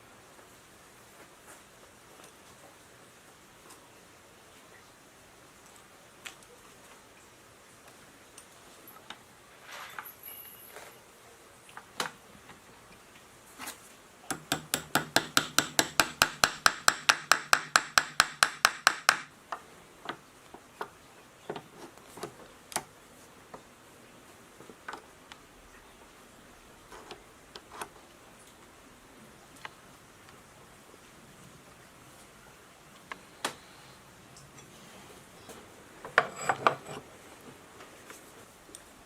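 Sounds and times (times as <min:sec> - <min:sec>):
hand tool clicking on metal: 0:14.3 - 0:19.3
metal knocks and taps: 0:14.3 - 0:19.3.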